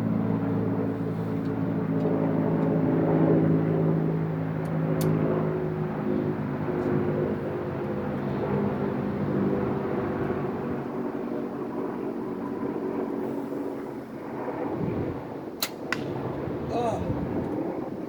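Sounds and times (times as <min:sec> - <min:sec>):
outdoor background noise: 0:00.0 - 0:18.0
sharp crack: 0:15.6 - 0:16.4.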